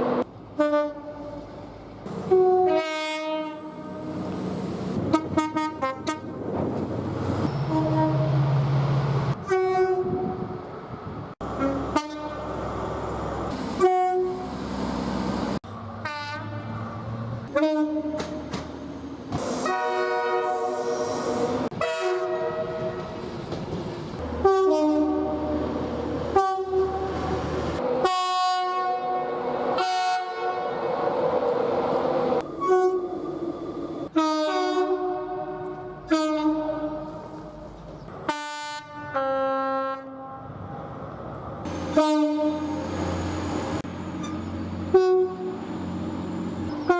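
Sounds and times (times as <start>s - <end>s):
train running noise: 0.0s - 39.3s, 40.0s - 46.9s
two-tone train horn blasts: 0.6s - 1.5s, 2.3s - 4.2s, 5.1s - 6.4s, 7.5s - 8.4s, 9.4s - 10.5s, 11.4s - 12.5s, 13.8s - 14.5s, 16.0s - 16.8s, 17.5s - 18.4s, 19.5s - 23.2s, 24.2s - 27.4s, 28.0s - 30.8s, 32.4s - 33.3s, 34.0s - 40.6s, 41.9s - 42.9s, 44.2s - 45.6s.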